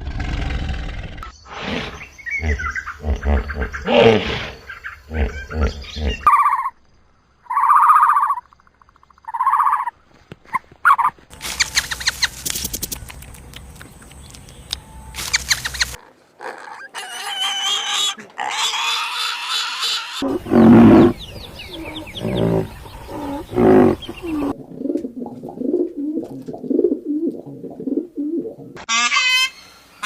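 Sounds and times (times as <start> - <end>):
deep loud grunting calls: 0.0 - 6.4, 16.4 - 24.6
high honking calls: 28.8 - 29.7.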